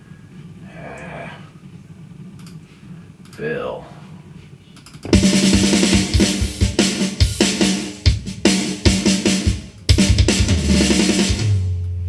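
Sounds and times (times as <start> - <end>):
drum kit fill: 5.0 - 12.0.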